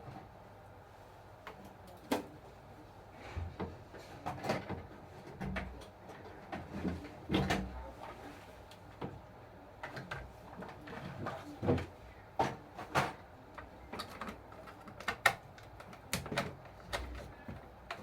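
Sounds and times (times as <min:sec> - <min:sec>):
clicks and knocks of model parts: 0:09.8 - 0:18.0.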